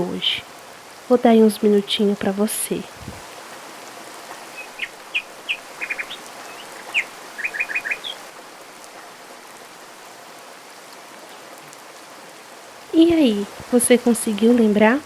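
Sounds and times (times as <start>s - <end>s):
waterfall rushing: 1.8s - 8.7s
small birds chirping: 4.1s - 8.3s.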